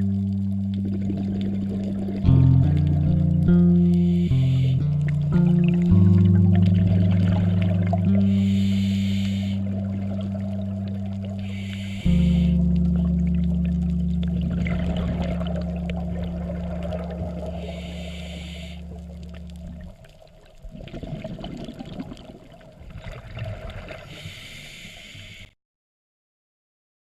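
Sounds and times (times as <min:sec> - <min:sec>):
low sustained music chord: 0:00.0 - 0:19.6
underwater bubbling and gurgling: 0:00.0 - 0:25.5
scuba regulator breathing hiss: 0:04.0 - 0:04.9, 0:08.2 - 0:09.8, 0:11.4 - 0:12.6, 0:17.5 - 0:19.0, 0:24.0 - 0:25.6.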